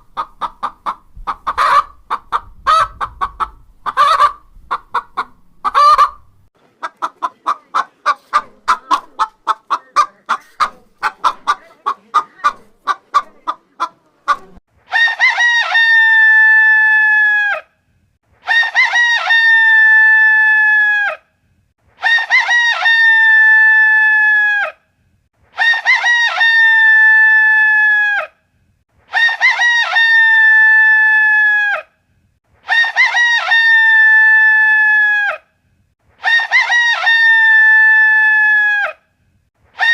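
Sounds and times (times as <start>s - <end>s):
rooster clucking: 0.0s - 16.4s, 22.0s - 23.5s, 25.6s - 27.2s, 29.1s - 30.4s, 32.7s - 34.6s, 36.2s - 38.0s.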